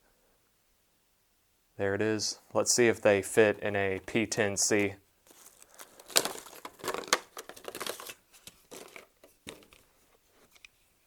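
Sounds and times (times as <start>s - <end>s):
plastic packaging crinkling: 5.2s - 10.0s.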